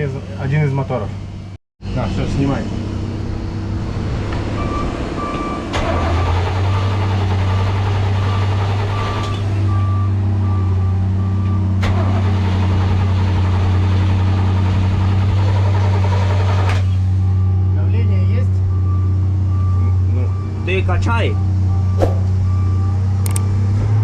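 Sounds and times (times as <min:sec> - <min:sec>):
boat engine starting and running: 0:02.0 - 0:09.8, 0:11.7 - 0:17.1.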